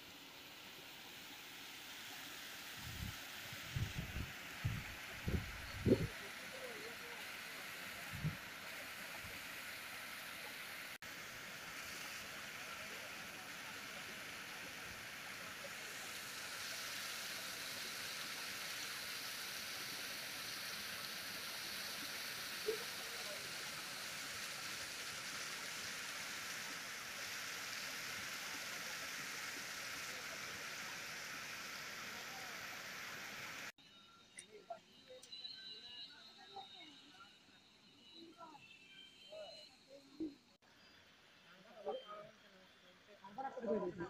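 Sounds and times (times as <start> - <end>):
running water rushing: 0.0 - 33.7.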